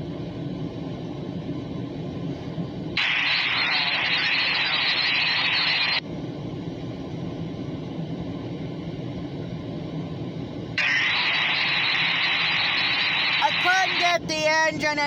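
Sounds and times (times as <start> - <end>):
loud hiss: 3.0 - 6.0, 10.8 - 15.0.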